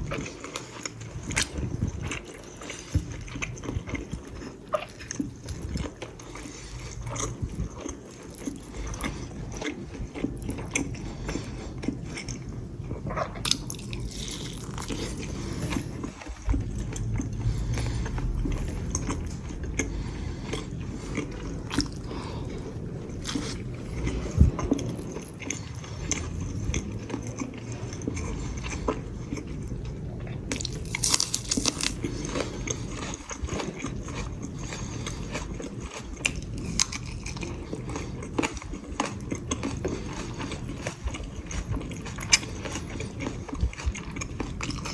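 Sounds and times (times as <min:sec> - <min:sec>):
person chewing crunchy food: 0:00.0 - 0:44.9.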